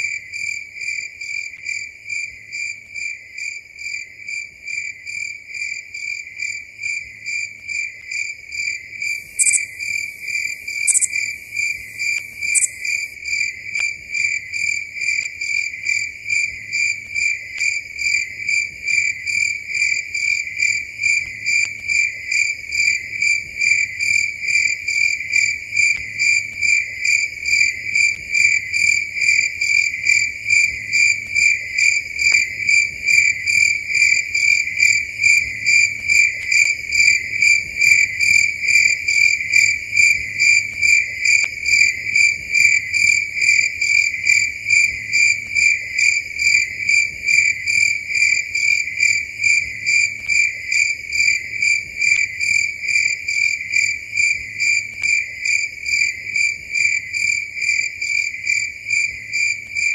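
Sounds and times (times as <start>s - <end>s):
cricket chirping: 0.0s - 59.9s
faint high hiss with squeaks: 9.3s - 11.8s.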